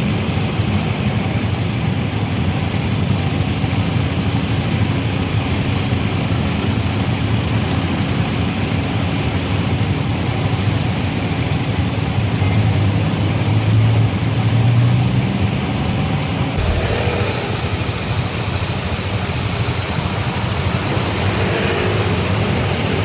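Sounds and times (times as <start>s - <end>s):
passing cars and motorbikes: 16.6s - 23.0s.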